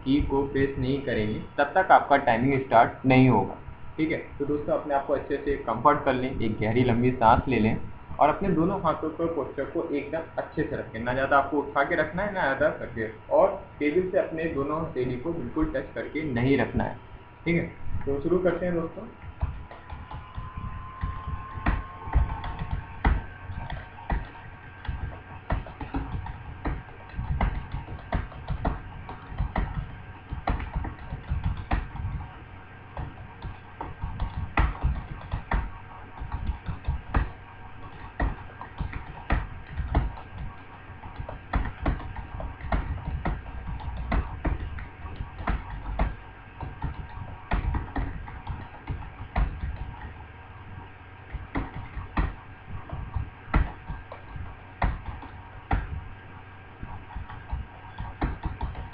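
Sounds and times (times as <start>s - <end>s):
computer keyboard typing: 19.3s - 50.2s, 51.3s - 56.1s, 56.8s - 58.9s.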